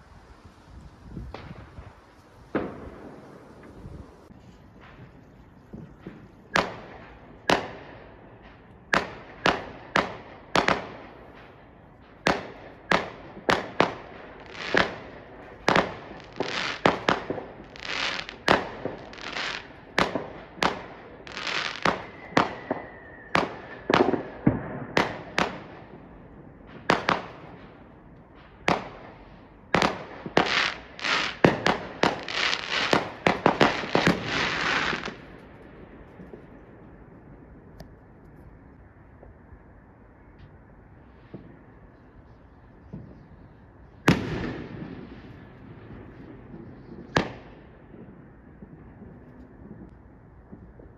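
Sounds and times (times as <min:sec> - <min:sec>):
fireworks bangs and crackle: 0:00.0 - 0:39.5, 0:40.4 - 0:50.9
faint descending whistle: 0:22.0 - 0:23.4.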